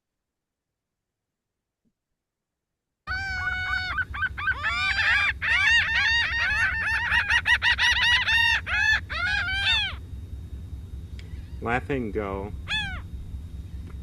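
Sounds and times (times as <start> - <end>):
gull laughing calls: 3.1 - 10.0, 11.2 - 11.8, 12.6 - 13.1.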